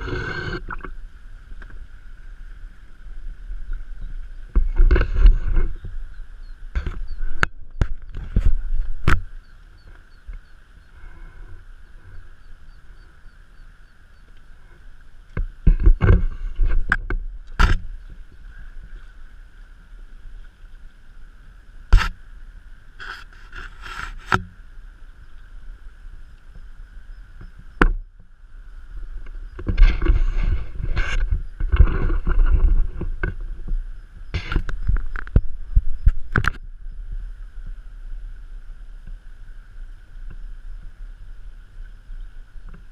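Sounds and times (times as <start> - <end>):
water hissing: 0.0 - 3.0.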